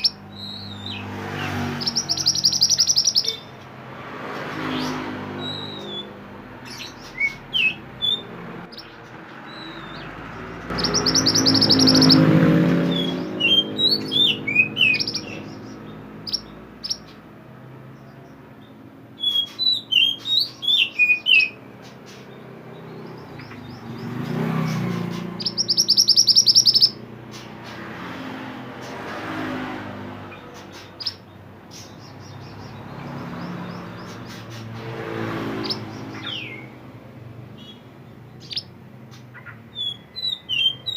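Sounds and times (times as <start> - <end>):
bird fast trill: 0.0 - 3.6, 4.6 - 17.2, 19.2 - 27.8, 30.3 - 36.7, 39.3 - 40.9
songbird chirps and whistles: 1.8 - 3.6, 5.4 - 10.1, 10.7 - 12.3, 12.9 - 17.2, 18.6 - 24.2, 25.1 - 27.0, 39.4 - 40.9.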